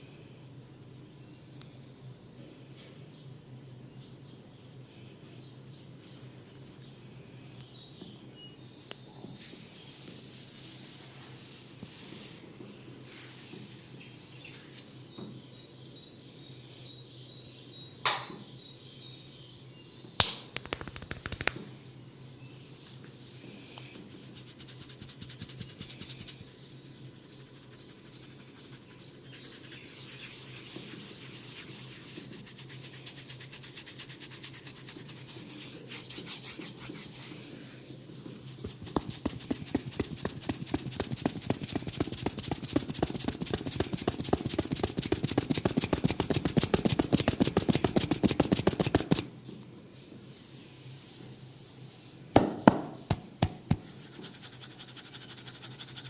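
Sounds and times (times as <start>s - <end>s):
fingers scratching hair: 20.6s - 21.6s, 23.8s - 37.2s, 38.4s - 49.2s, 53.1s - 56.0s.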